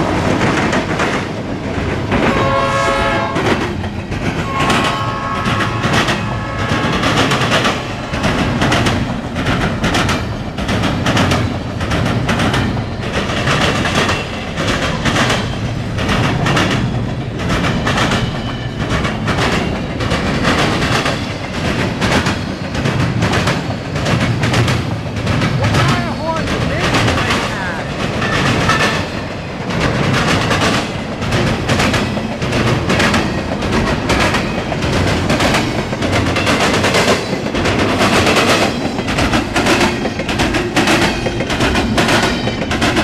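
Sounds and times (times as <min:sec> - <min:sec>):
train rumble: 0:00.0 - 0:43.0
wheels clacking over rail joints: 0:00.0 - 0:43.0
locomotive horn: 0:02.2 - 0:03.6, 0:04.4 - 0:07.2.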